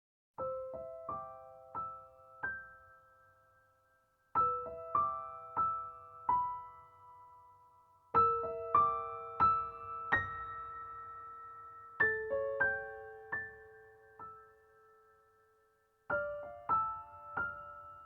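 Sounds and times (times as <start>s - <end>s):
soft piano notes: 4.3s - 18.0s.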